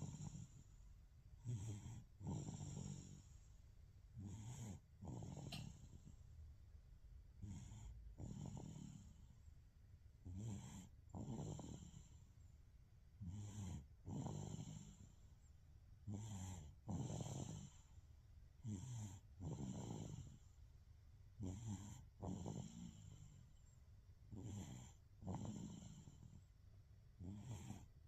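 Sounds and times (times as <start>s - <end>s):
baby snoring: 1.4s - 3.3s, 4.2s - 5.9s, 10.2s - 12.1s, 16.1s - 17.8s, 18.6s - 20.4s, 21.4s - 23.2s, 24.3s - 26.2s, 27.2s - 27.9s.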